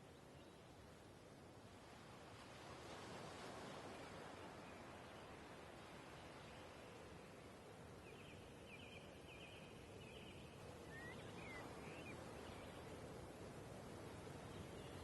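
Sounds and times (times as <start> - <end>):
faint outdoor ambience: 0.0 - 15.0.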